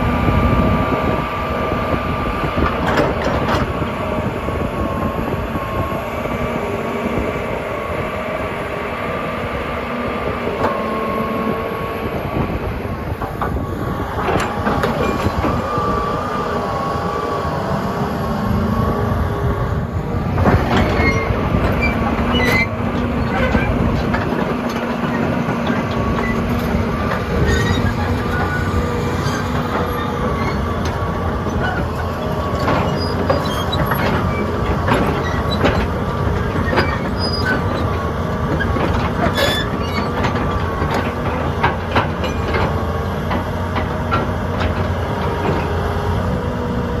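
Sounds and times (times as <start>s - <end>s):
excavator diesel engine whine: 0.0s - 47.0s
metallic clanks and squeaks: 14.3s - 15.6s, 20.6s - 42.7s.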